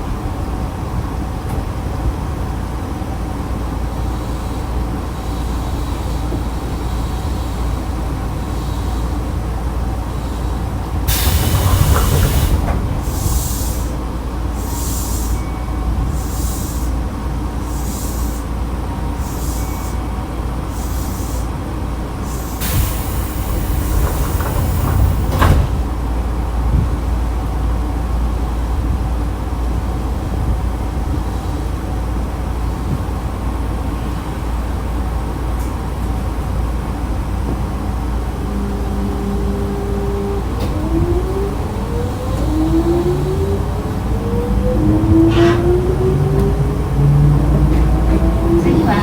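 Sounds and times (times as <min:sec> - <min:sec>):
compressed air hiss of doors: 0:10.1 - 0:15.4, 0:16.1 - 0:17.0, 0:17.6 - 0:18.5, 0:20.7 - 0:21.5, 0:22.2 - 0:25.9
traction motors whining: 0:10.4 - 0:16.9, 0:22.2 - 0:25.9, 0:38.7 - 0:49.0
train doors shutting knock: 0:11.1 - 0:14.8, 0:22.2 - 0:26.1, 0:45.0 - 0:49.0.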